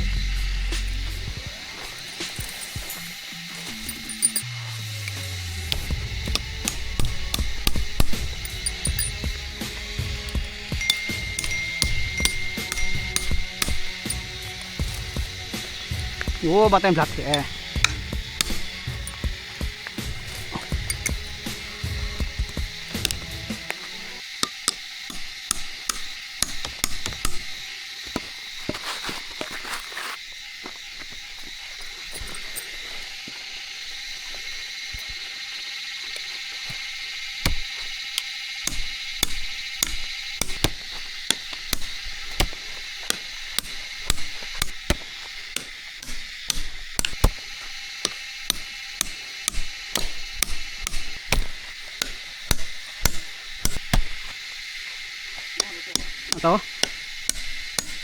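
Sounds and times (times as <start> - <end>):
high-pitched drone: 0.0 - 24.2
sharp chopping strikes: 5.1 - 27.6, 37.4 - 54.4, 55.6 - 58.0.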